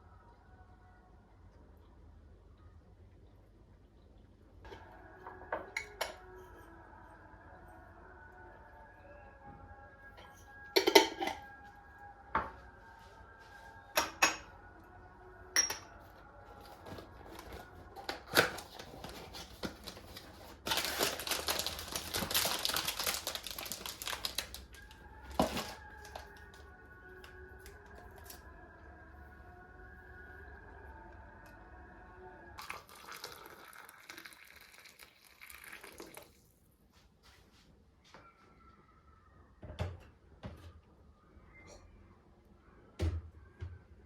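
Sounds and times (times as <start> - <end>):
crackling rustle of wrapper: 16.7 - 26.6.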